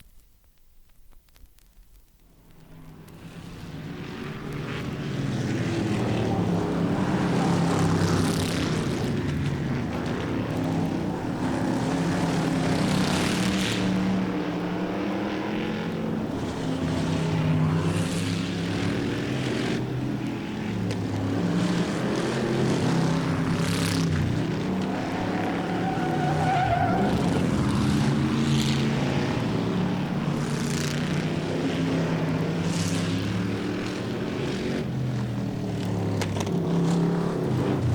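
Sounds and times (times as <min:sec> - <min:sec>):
race car engines running: 0:02.4 - 0:37.9.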